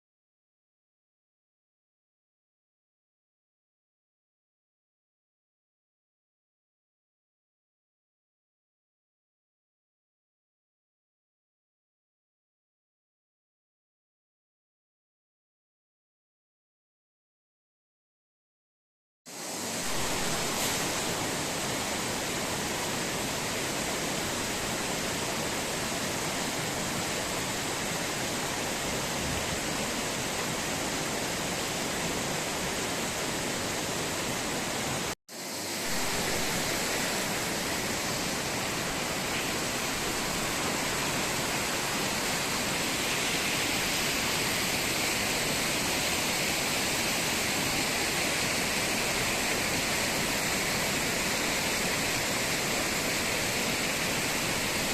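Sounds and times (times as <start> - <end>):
rushing water: 19.3 - 54.9.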